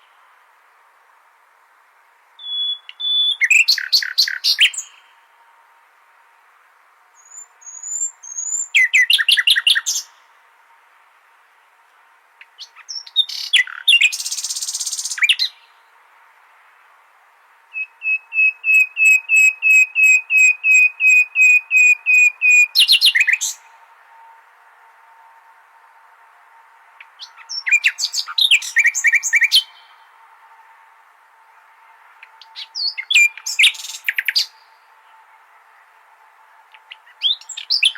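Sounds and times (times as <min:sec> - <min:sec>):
nightingale singing: 0:02.4 - 0:05.4, 0:07.1 - 0:10.4, 0:12.4 - 0:15.9, 0:17.7 - 0:23.9, 0:26.9 - 0:37.9.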